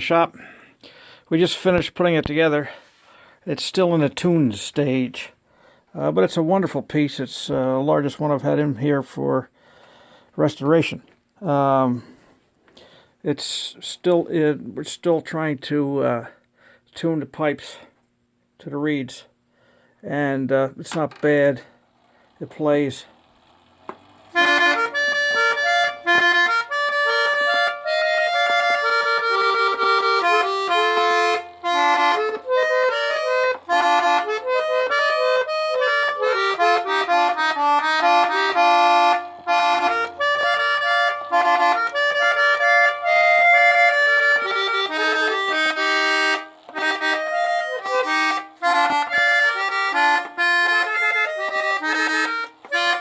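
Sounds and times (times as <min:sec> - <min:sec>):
clock reed trumpets playing chords: 0:24.3 - 0:53.0.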